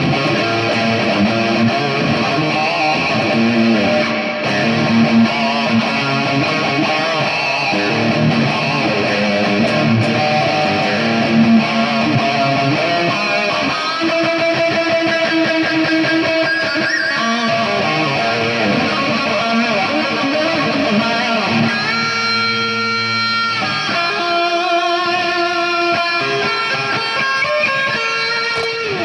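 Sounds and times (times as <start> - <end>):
electric guitar chords: 0.0 - 29.0.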